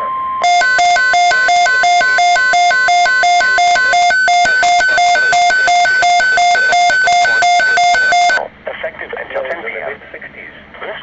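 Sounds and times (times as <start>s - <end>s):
two-tone electronic alert warble: 0.4s - 8.4s.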